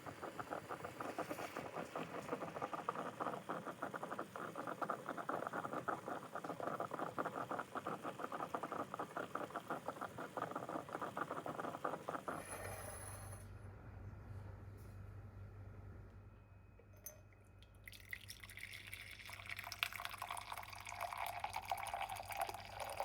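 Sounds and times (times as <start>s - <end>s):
coffee percolator bubbling: 0.0s - 12.7s, 17.8s - 23.0s.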